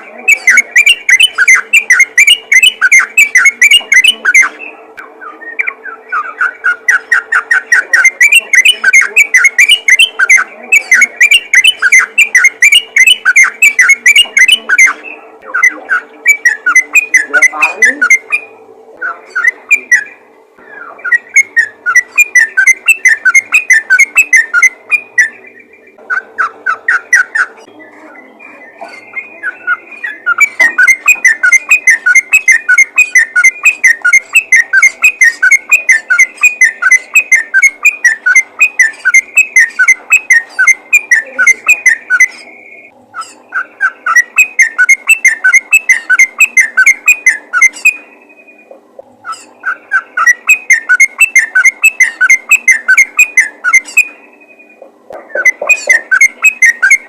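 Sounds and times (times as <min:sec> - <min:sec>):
bulbul chattering call: 0:00.0 - 0:57.0.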